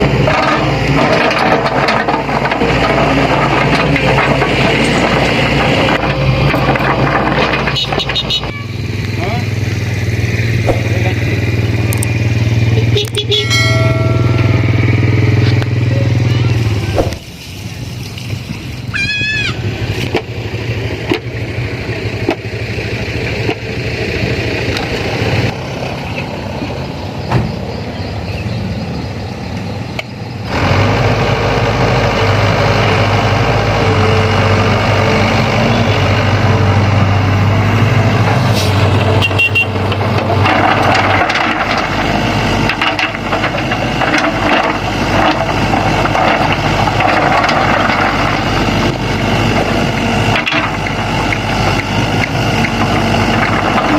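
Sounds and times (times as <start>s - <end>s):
excavator diesel engine revving: 0.0s - 53.9s
scattered knocks: 10.6s - 11.2s.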